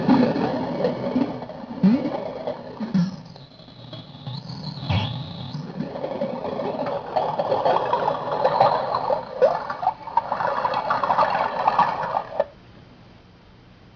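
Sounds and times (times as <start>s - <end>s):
glitchy electronic crackling: 2.8s - 6.4s.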